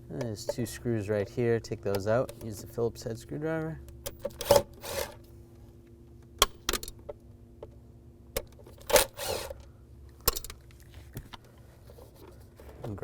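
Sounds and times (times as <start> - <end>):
faint steady hum: 0.0 - 13.0
screwdriver clicking and scraping: 4.1 - 5.2.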